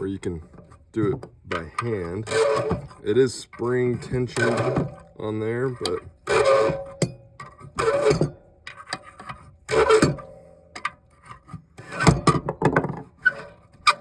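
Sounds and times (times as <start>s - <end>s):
cap threads scraping: 0.0s - 10.3s.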